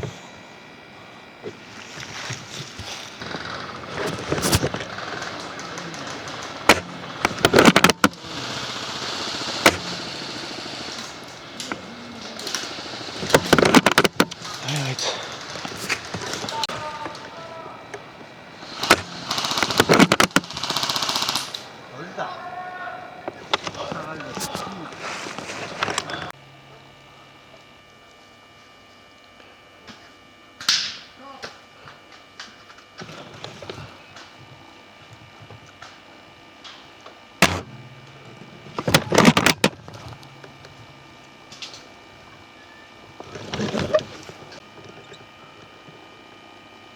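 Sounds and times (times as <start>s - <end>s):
steady low hum: 0.0s - 46.9s
faint clicks: 1.9s - 21.7s
airsoft guns firing: 3.2s - 24.9s, 37.4s - 40.0s.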